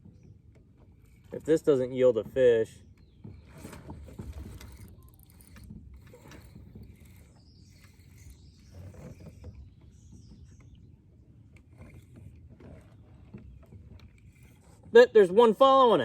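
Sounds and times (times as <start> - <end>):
fishing reel being cranked: 3.6 - 9.5.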